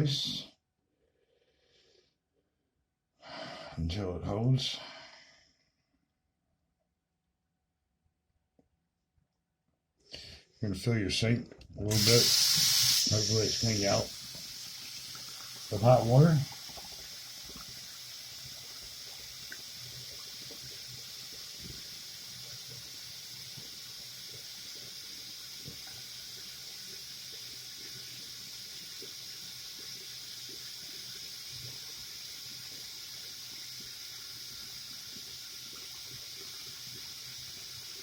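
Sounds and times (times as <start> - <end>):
water running into a sink: 11.9 - 38.0.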